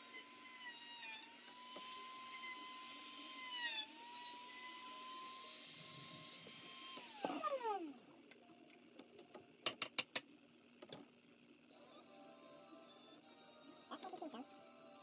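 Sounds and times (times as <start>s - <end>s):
rotary tool high whine: 0.0s - 8.1s.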